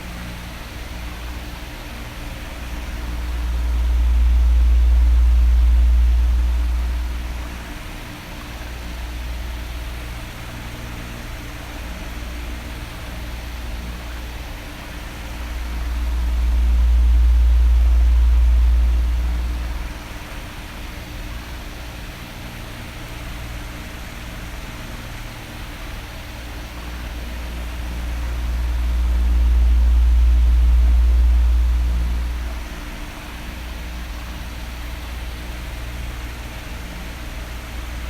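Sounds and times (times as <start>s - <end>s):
electric fan whooshing: 0.0s - 21.6s, 24.2s - 38.0s
faint fan hum: 0.0s - 38.0s
deep wind rumble on microphone: 0.9s - 10.7s, 13.3s - 21.5s, 26.8s - 36.3s.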